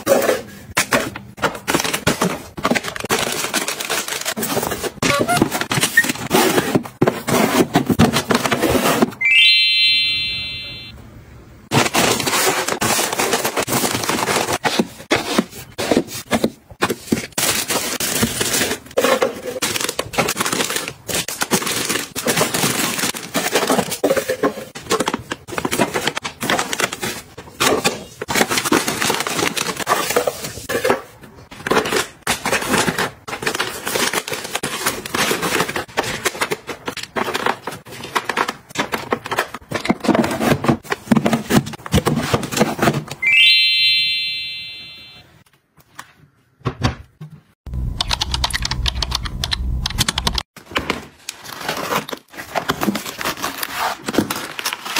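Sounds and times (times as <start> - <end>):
plastic packaging crinkling: 1.7 - 6.2.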